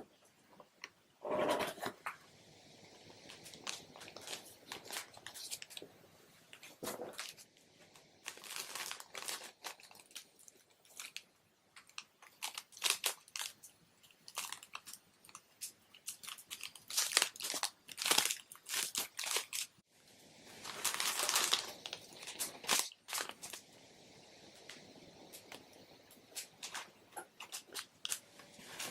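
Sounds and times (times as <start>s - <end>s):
packaging crinkling and tearing: 3.3s - 5.9s, 6.5s - 19.8s, 20.6s - 23.6s, 26.3s - 28.9s.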